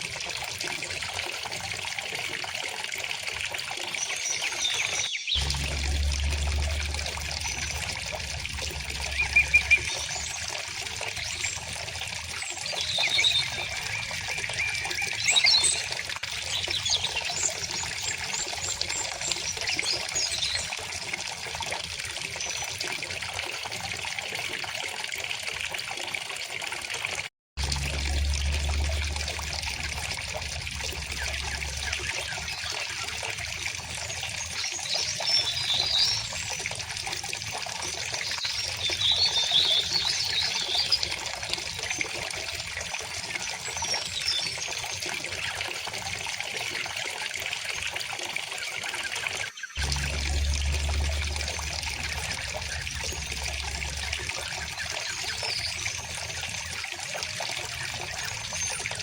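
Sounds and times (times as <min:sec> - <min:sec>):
birds chirping: 0:04.0 - 0:20.7, 0:49.6 - 0:59.0
river water flowing: 0:04.2 - 0:18.1, 0:27.6 - 0:34.1, 0:49.8 - 0:59.0
low rumble: 0:05.4 - 0:10.8, 0:27.6 - 0:32.7, 0:49.8 - 0:56.5.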